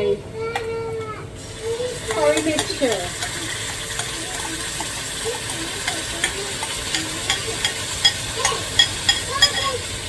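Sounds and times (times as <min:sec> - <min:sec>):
onions sizzling in hot oil: 0:01.4 - 0:10.0
spoon clicking against pot: 0:04.0 - 0:09.7.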